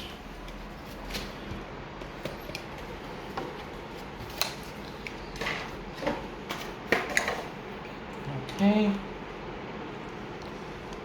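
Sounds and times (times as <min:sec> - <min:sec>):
low room hum: 0:00.0 - 0:11.0.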